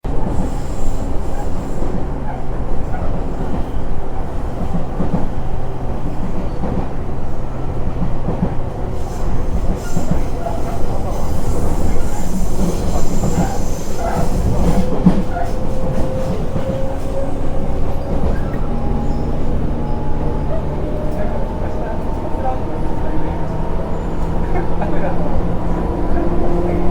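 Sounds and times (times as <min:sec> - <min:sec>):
train rumbling: 0:00.0 - 0:26.9.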